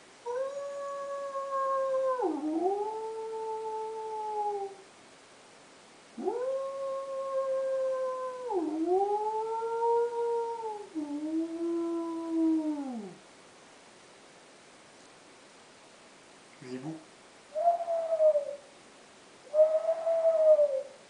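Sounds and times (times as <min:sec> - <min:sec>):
person imitating wolf howl: 0:00.3 - 0:04.8, 0:06.2 - 0:13.2, 0:17.6 - 0:18.6, 0:19.5 - 0:20.9.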